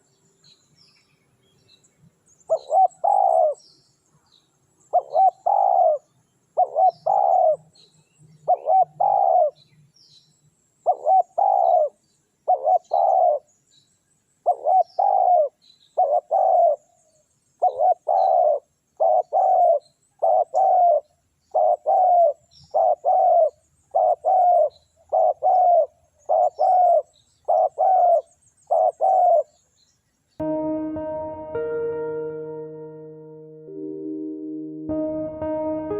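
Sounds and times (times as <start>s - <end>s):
small birds chirping: 0.0s - 30.4s
dove cooing: 2.5s - 3.6s, 4.9s - 6.0s, 6.6s - 7.6s, 8.5s - 9.6s, 10.9s - 11.9s, 12.5s - 13.5s, 14.5s - 16.8s, 17.6s - 29.5s.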